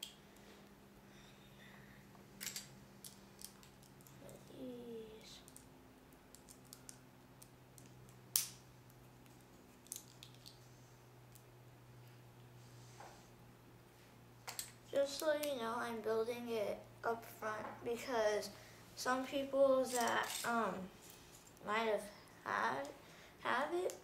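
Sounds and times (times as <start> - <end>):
plastic pieces clicking together: 6.3 - 8.6.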